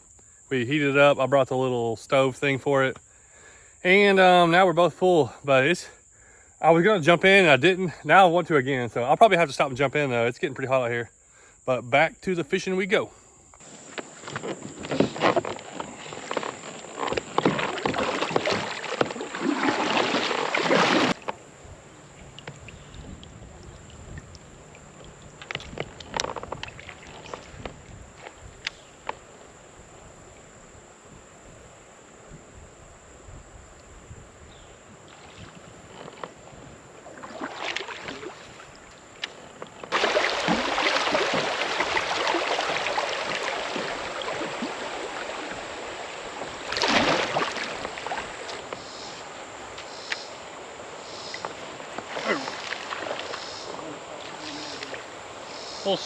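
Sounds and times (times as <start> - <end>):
water splashing around kayak: 12.5 - 32.6, 33.8 - 56.0.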